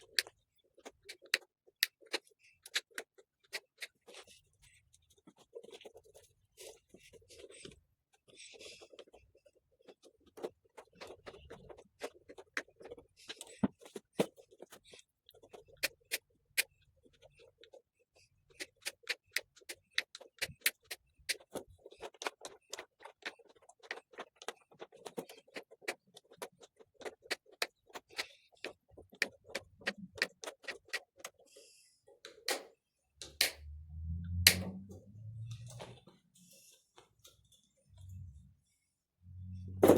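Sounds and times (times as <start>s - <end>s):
snips cutting wire mesh: 32.5s - 33.6s, 34.5s - 34.7s.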